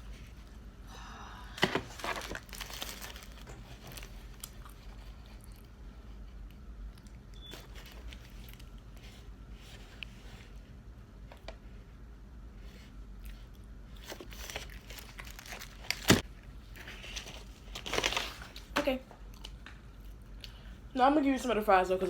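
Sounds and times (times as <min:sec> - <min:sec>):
food wrapping crinkling: 0:01.6 - 0:05.8, 0:07.5 - 0:10.1, 0:13.3 - 0:20.0
chewing: 0:03.6 - 0:09.0.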